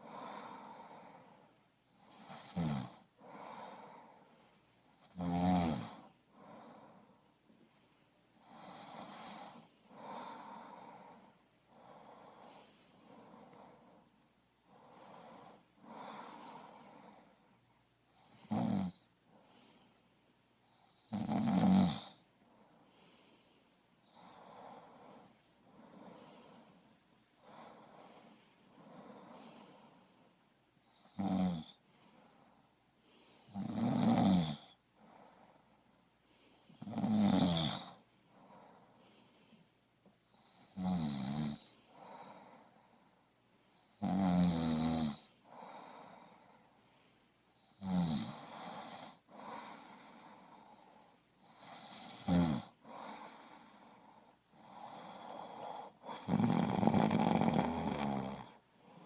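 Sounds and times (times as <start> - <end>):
person snoring: 0.0 - 4.2, 4.9 - 7.2, 8.4 - 14.0, 14.7 - 17.3, 18.2 - 19.9, 20.9 - 22.2, 22.9 - 30.2, 30.9 - 31.8, 33.1 - 34.8, 36.4 - 38.0, 40.4 - 42.7, 43.8 - 46.6, 47.6 - 59.0
quiet breathing: 0.0 - 59.0.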